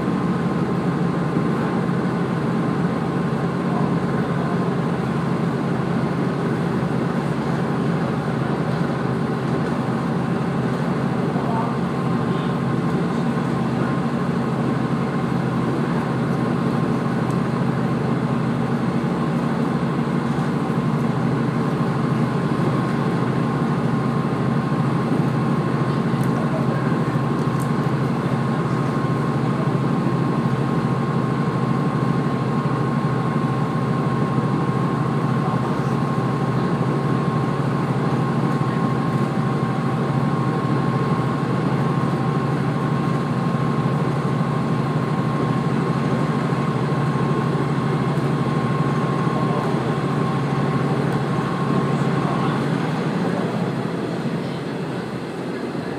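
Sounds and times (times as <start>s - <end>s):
thin steady whine: 0.0s - 55.9s
train running rumble: 0.0s - 55.9s.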